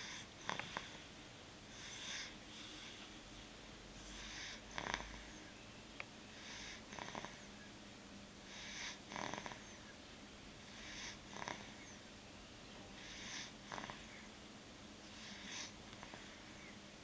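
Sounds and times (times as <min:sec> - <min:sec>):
person snoring: 0:08.6 - 0:09.8.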